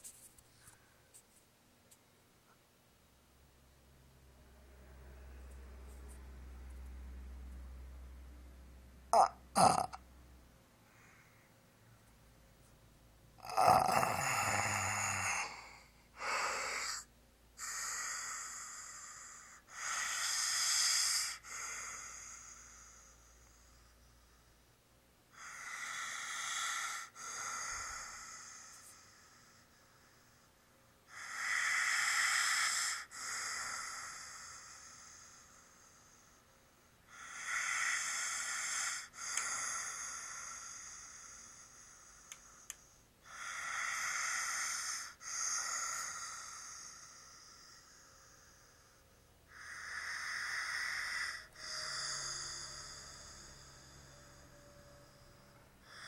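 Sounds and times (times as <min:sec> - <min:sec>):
person snoring: 0:09.2 - 0:10.0, 0:13.4 - 0:23.5, 0:25.4 - 0:29.6, 0:31.1 - 0:36.4, 0:37.1 - 0:56.0.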